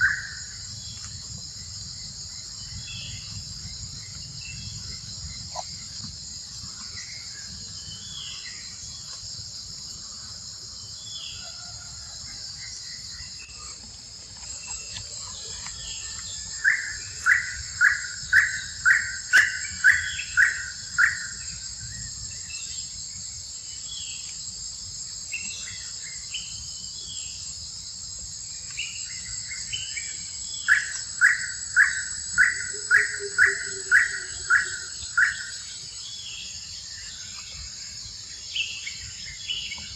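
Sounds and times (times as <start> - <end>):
insects buzzing: 0.0 - 39.9.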